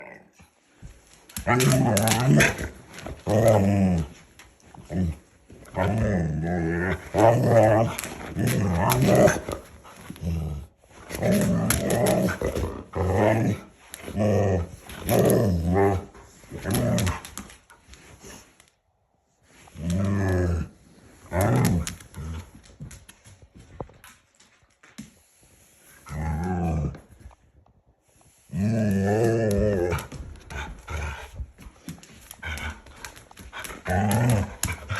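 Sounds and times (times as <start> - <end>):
dog grumbling and howling: 1.4 - 4.2, 4.8 - 17.4, 28.5 - 34.9.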